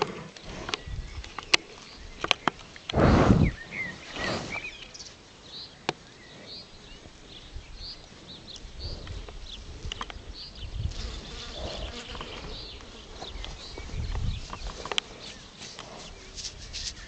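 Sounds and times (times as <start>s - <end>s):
horse snorting: 0.0s - 0.8s, 2.9s - 4.8s, 11.4s - 12.1s
small birds chirping: 0.0s - 17.0s.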